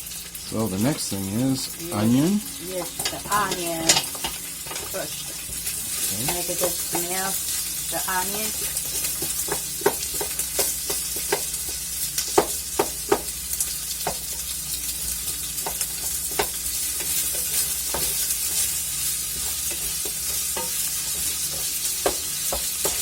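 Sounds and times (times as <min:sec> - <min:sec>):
meat and onion sizzling in pan: 0:00.0 - 0:23.0
utensil knocking and scraping pan: 0:15.4 - 0:23.0.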